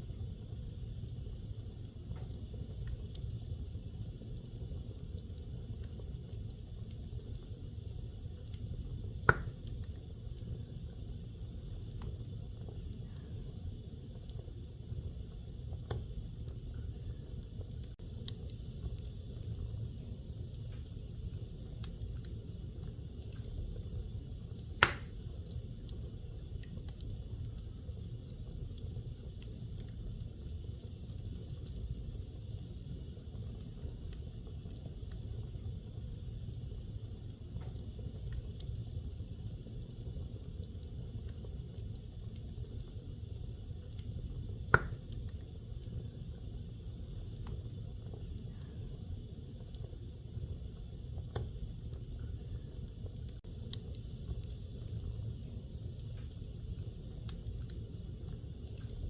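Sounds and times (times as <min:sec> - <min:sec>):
wood fire crackling: 0:00.0 - 0:59.0
loud fire pop: 0:09.2 - 0:09.6, 0:24.8 - 0:25.2, 0:44.7 - 0:45.1.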